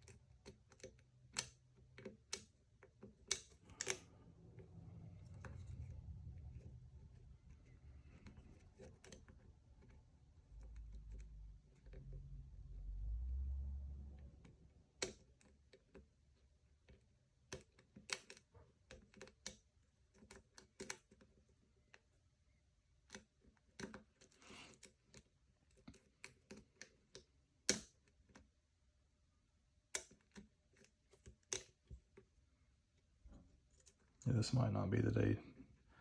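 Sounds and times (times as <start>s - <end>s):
lock pick clicking in lock: 0.0s - 4.1s, 27.7s - 28.4s.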